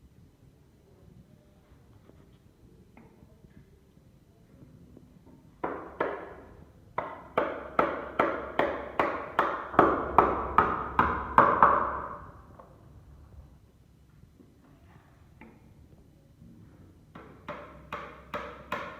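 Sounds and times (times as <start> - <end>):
hammering on wood: 5.6 - 12.7, 17.1 - 18.9.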